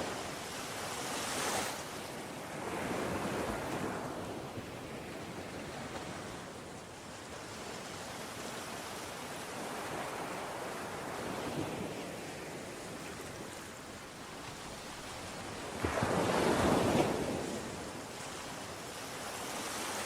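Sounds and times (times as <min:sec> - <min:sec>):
ocean waves washing: 0:00.0 - 0:20.0
wind noise: 0:14.5 - 0:20.0.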